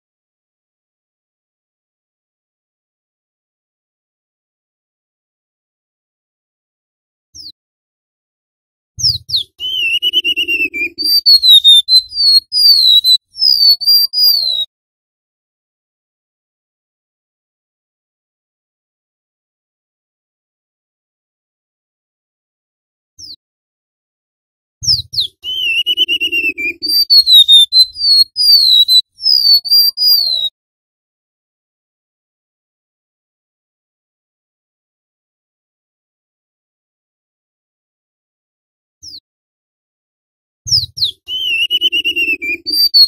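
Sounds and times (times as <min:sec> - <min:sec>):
bird singing whistles and trills: 0:09.0 - 0:14.7, 0:23.2 - 0:23.4, 0:24.8 - 0:30.5, 0:39.0 - 0:39.2, 0:40.7 - 0:43.0.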